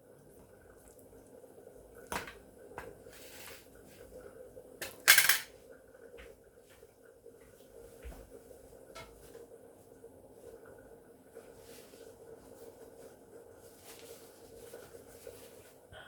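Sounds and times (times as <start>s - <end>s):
faint steady hum: 0.0s - 16.0s
dishes and utensils clinking: 4.8s - 5.5s
dishes clattering: 4.8s - 5.5s.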